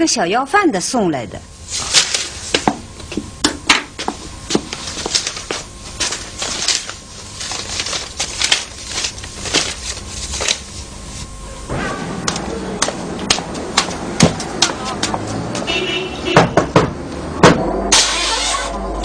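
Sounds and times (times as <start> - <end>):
paper rustling and crinkling: 1.7 - 2.7, 4.0 - 11.3.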